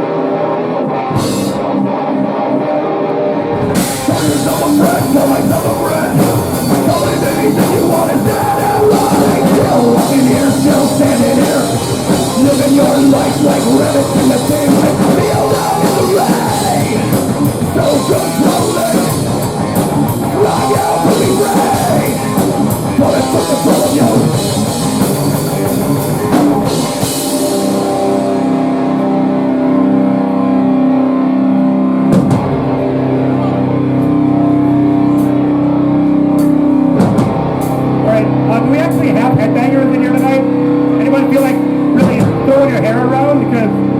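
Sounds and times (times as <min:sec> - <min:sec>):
distorted guitar: 0:00.0 - 0:43.9
rock band playing loud: 0:00.0 - 0:43.9
drums and cymbals: 0:01.2 - 0:01.6, 0:03.7 - 0:28.4, 0:32.1 - 0:32.7, 0:36.4 - 0:38.3, 0:41.3 - 0:42.6.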